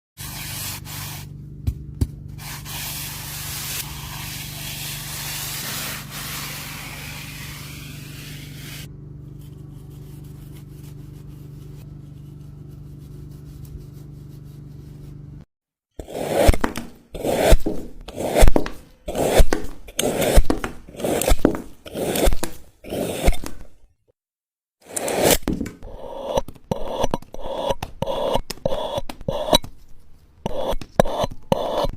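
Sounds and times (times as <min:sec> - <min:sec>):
low hum with hiss: 0:00.2 - 0:15.4.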